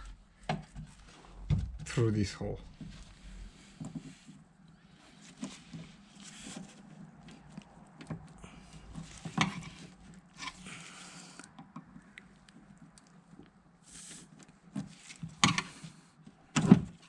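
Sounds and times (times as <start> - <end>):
scraping rustles: 2.6 - 11.2.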